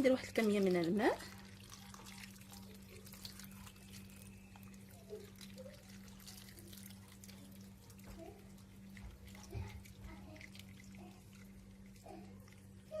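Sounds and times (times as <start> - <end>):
low electrical hum: 0.0 - 13.0
small drips and ticks: 0.0 - 13.0
water trickling into a bowl: 0.0 - 13.0.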